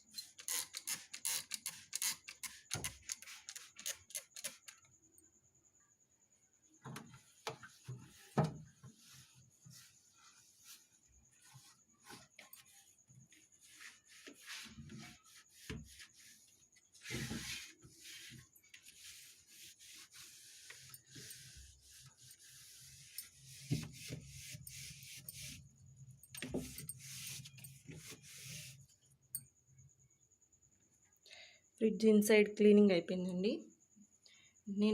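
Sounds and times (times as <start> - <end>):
cloth rubbing plastic: 7.7 - 25.6.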